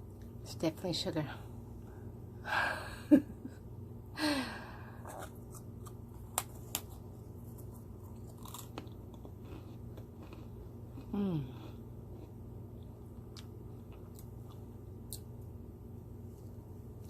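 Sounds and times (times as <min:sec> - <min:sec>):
person chewing crunchy sweets: 0:04.8 - 0:15.4.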